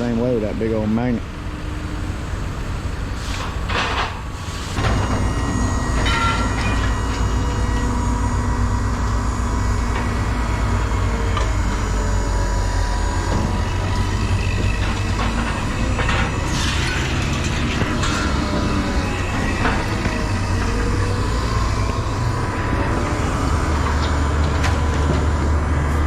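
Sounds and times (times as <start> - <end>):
heavy diesel machinery running: 0.0 - 26.0
metallic clanks and knocks: 4.8 - 7.3, 13.3 - 22.1.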